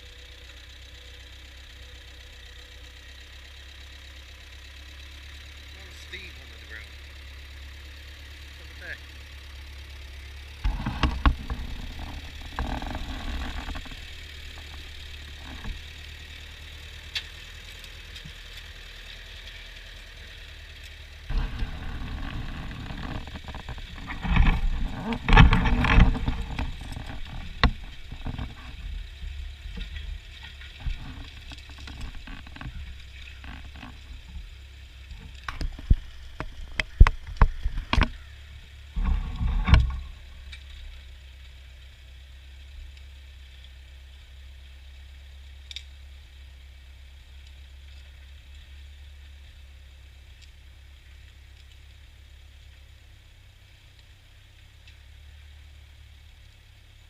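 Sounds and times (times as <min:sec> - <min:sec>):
tractor engine droning: 0:00.0 - 0:57.0
engine rumbling and knocks: 0:02.4 - 0:41.6.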